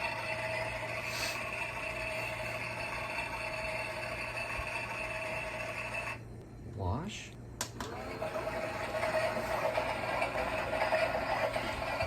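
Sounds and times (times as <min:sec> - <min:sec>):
small electric motor whirring: 0:00.0 - 0:06.2.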